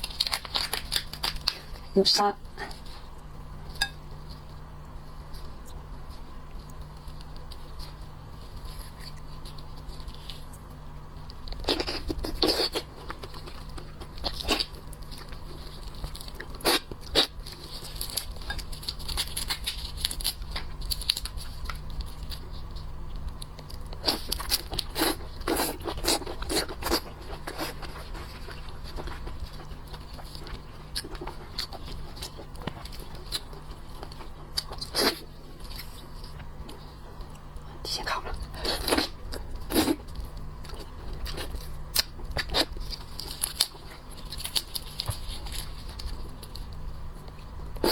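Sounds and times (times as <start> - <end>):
shell cracking and crunching: 0.0 - 1.8, 40.2 - 46.7
steady low hum: 0.0 - 47.9.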